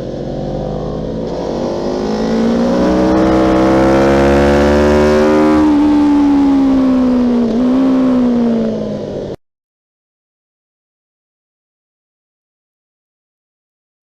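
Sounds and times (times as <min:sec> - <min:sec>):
engine at high revs: 0:00.0 - 0:09.4.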